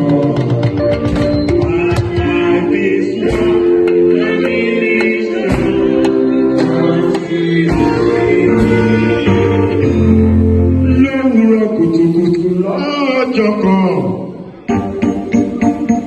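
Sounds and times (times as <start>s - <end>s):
drum strokes: 0.0s - 10.6s
voices singing gospel: 0.0s - 13.9s.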